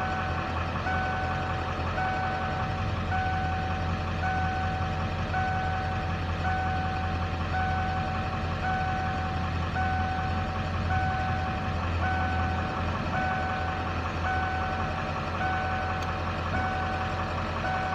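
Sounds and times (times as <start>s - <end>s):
diesel engine idling rough: 0.0s - 17.9s.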